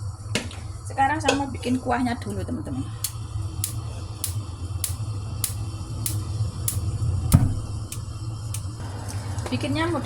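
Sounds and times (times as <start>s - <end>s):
low hum: 2.4s - 9.4s.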